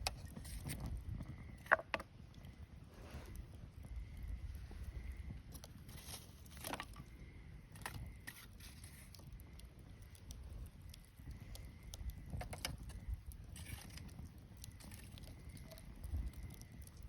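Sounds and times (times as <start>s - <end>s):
bonfire crackling: 0.0s - 17.0s.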